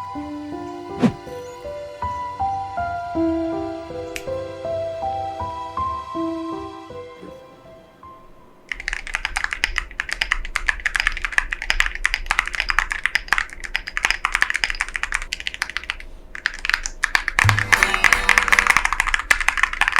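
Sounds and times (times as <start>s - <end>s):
fast mechanical keyboard typing: 8.7s - 17.7s, 18.4s - 19.9s.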